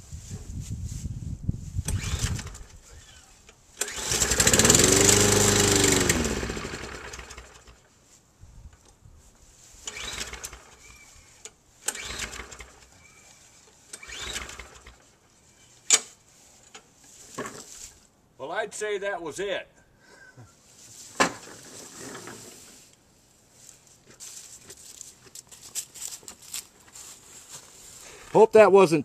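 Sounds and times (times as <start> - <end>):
starter cord pulls: 1.8 - 7.7, 9.8 - 13.0, 13.9 - 15.0
lawn mower engine running: 1.9 - 7.9, 9.8 - 15.2.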